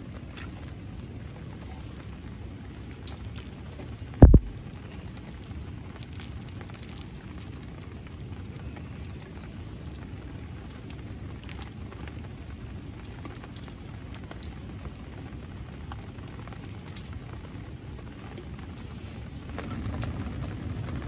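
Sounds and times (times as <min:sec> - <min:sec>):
steady rain: 0:00.0 - 0:21.0
loud low thump: 0:04.2 - 0:04.6.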